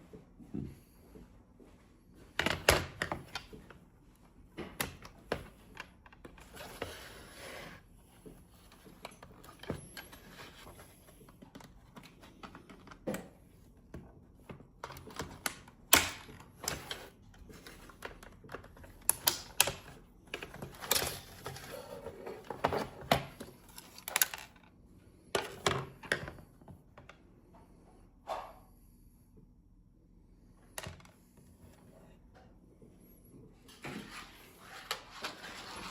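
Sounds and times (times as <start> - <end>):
plastic parts clicking and clacking: 14.4 - 24.7.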